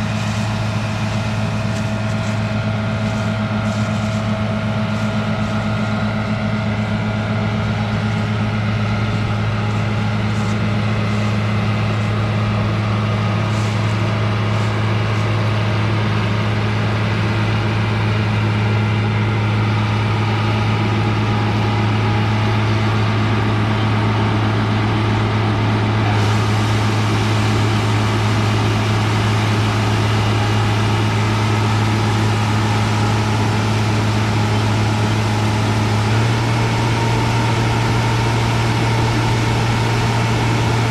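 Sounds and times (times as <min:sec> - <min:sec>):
diesel engine humming: 0:00.0 - 0:40.9.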